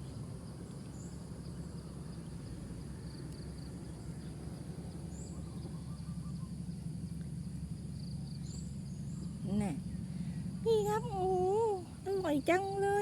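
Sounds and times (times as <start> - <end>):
insects droning: 0.0 - 13.0.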